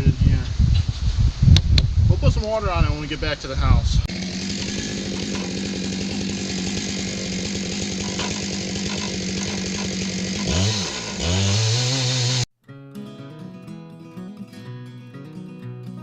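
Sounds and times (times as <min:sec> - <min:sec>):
chainsaw running at high revs: 0:04.1 - 0:12.5.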